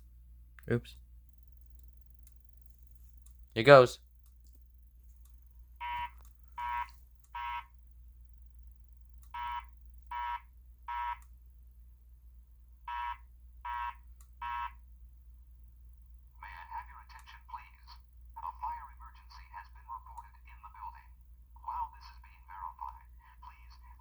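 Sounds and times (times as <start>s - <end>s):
fire alarm beeps: 5.8s - 7.7s, 9.4s - 11.2s.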